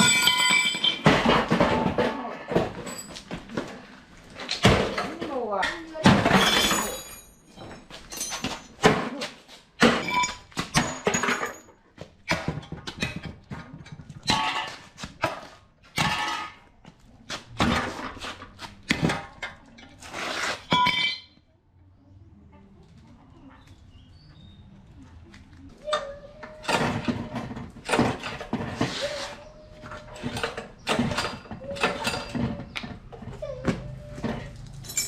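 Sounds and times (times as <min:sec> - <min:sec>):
metal tools clanking: 0:00.0 - 0:03.5, 0:05.1 - 0:08.8, 0:09.8 - 0:11.8, 0:20.6 - 0:21.4, 0:34.2 - 0:35.0.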